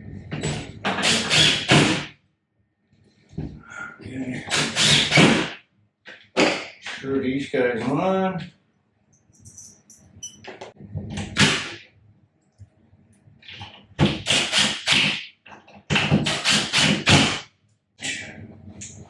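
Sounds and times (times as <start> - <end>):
screwdriver grinding screws into wall: 0.8 - 1.8.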